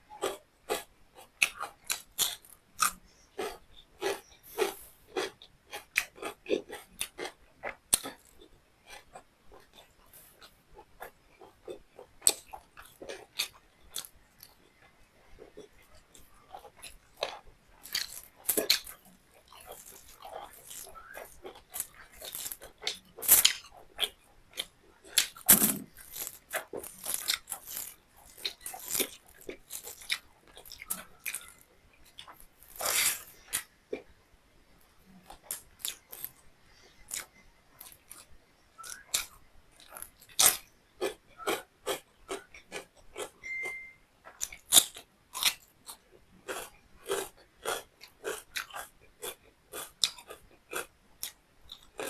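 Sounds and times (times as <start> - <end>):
chewing and mouth sounds: 0.1 - 34.1, 34.8 - 52.0
short high beep: 43.4 - 44.0.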